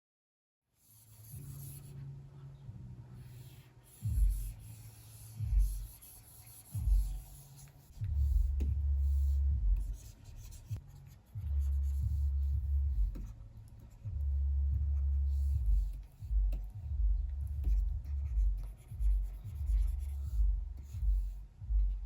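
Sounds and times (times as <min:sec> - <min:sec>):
pen rubbing on screen: 0:00.8 - 0:02.0, 0:03.2 - 0:14.0.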